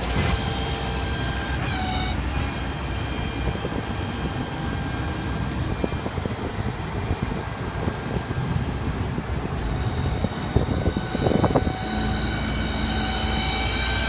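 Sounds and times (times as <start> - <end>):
diesel truck engine rumble: 0.0 - 14.0
steady high whine: 0.0 - 14.0.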